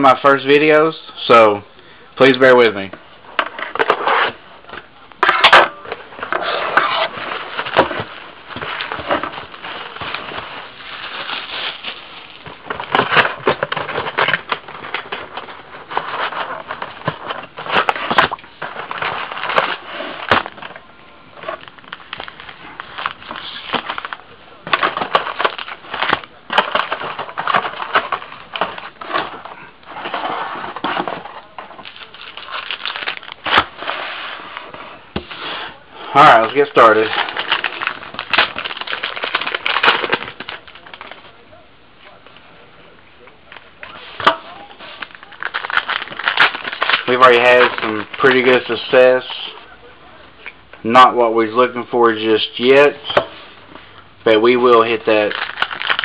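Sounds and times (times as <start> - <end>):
plastic wrapping crinkling and tearing: 5.2 - 34.0, 35.3 - 41.4, 43.5 - 49.6, 54.3 - 56.0.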